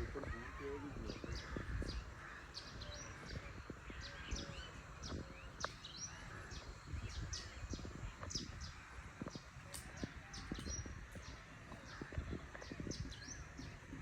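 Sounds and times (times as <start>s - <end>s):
birds chirping: 0.0s - 14.0s.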